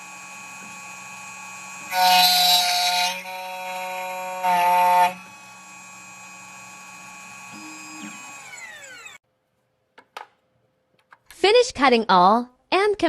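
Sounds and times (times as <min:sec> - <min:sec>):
machine spindle whine: 0:00.0 - 0:09.2
grinding key cutting: 0:00.3 - 0:09.2.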